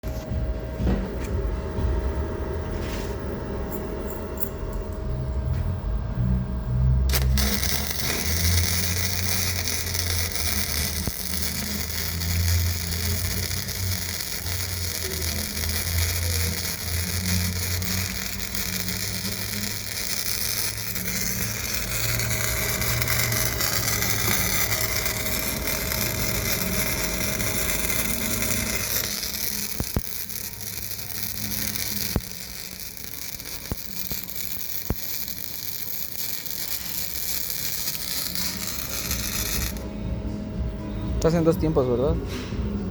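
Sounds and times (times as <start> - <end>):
welding arc crackling hiss: 7.0 - 40.0.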